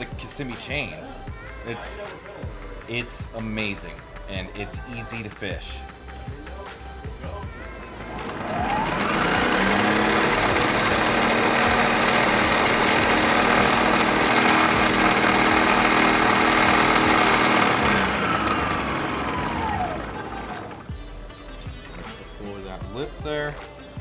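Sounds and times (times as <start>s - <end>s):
electric motor whining: 7.5s - 21.1s.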